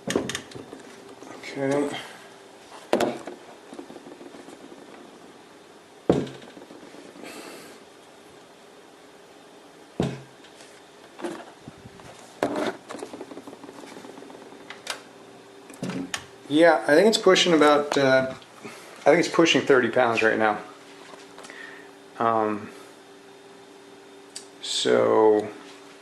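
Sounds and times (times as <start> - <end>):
knocks on computer case: 6.1 - 6.9, 10.0 - 10.3.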